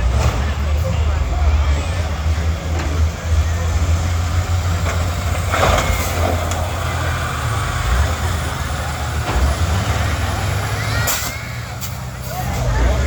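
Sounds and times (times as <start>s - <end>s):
bus engines rumbling and revving: 0.0s - 13.0s.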